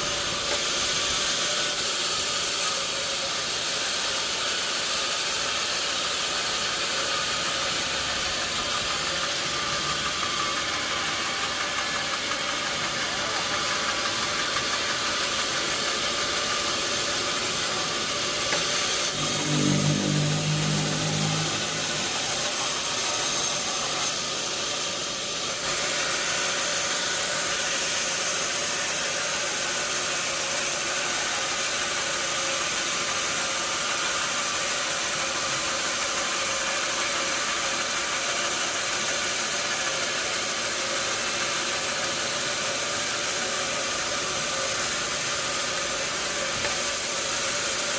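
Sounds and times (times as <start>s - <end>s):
sawmill machinery running: 0.0s - 47.9s
brief low pitched sound: 19.1s - 22.9s.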